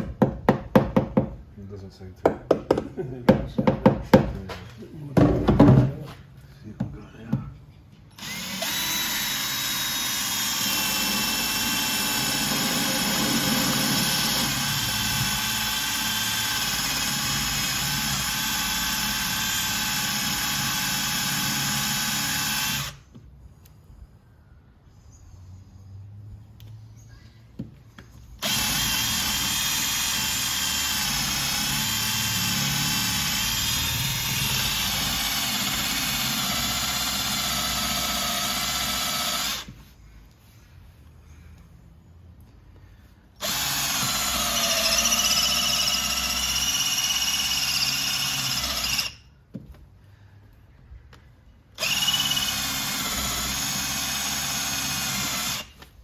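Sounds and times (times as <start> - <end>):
electric drill whining: 8.1 - 23.1, 28.4 - 39.7, 43.4 - 49.3, 51.8 - 55.8.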